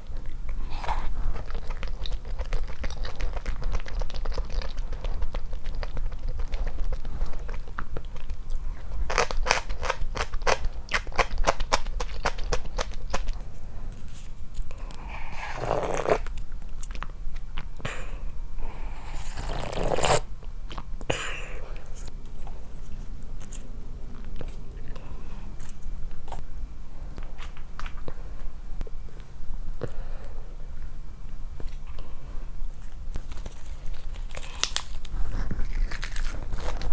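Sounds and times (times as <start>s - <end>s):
crisp crunching and chewing: 0.0s - 14.9s, 32.8s - 36.9s.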